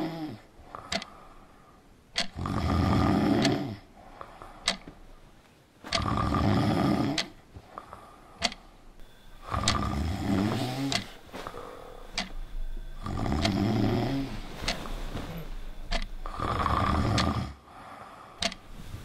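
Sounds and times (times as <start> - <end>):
quiet breaths: 0.0 - 19.0
person snoring: 2.4 - 3.9, 6.0 - 7.3, 9.4 - 12.0, 13.0 - 14.6, 16.2 - 17.7.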